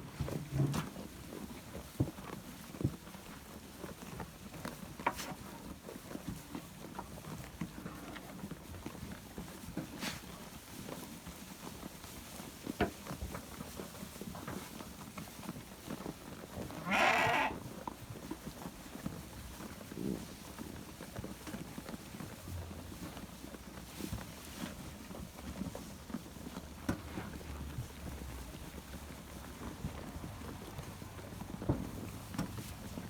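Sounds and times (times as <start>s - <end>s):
light knocks and rustles: 0.0s - 16.6s, 17.7s - 33.0s
sheep bleating: 16.8s - 17.6s.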